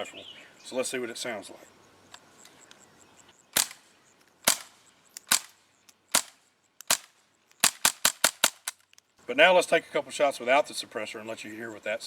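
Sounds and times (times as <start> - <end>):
suppressed rifle shots: 3.6 - 8.8.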